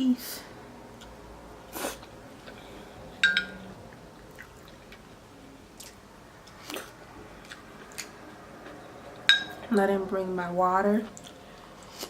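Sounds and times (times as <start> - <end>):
cutlery clinking against dish: 3.2 - 3.6, 9.3 - 9.6
chewing and mouth sounds: 4.3 - 5.1, 5.8 - 9.8, 11.0 - 12.0.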